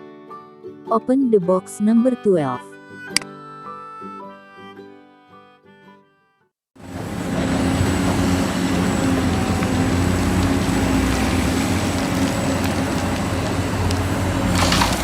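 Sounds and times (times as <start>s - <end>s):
vehicle engine rumbling: 6.8s - 15.0s.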